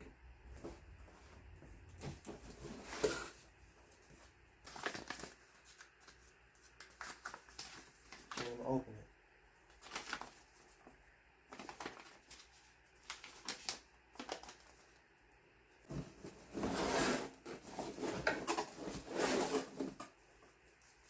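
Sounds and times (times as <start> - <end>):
cardboard rustling and scraping: 0.5 - 8.4, 15.8 - 21.0.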